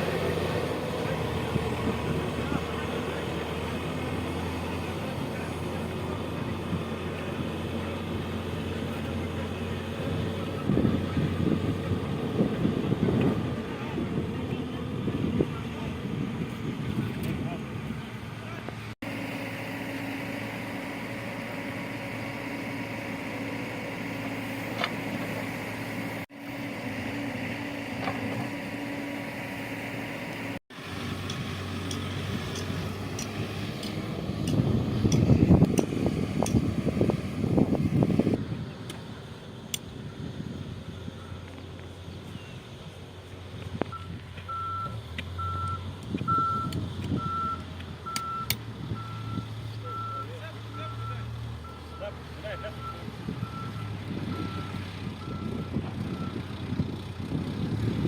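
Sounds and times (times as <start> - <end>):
diesel engine humming: 0.0 - 58.0
reversing alarm beeping: 43.9 - 56.4.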